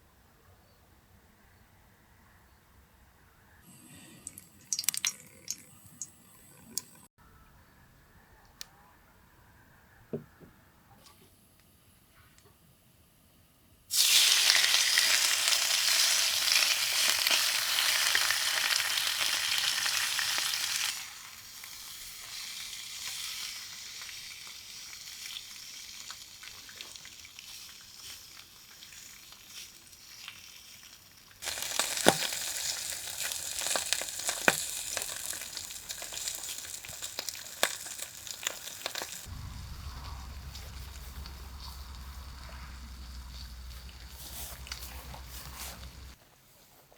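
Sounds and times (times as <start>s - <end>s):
food sizzling in a frying pan: 13.9s - 39.3s.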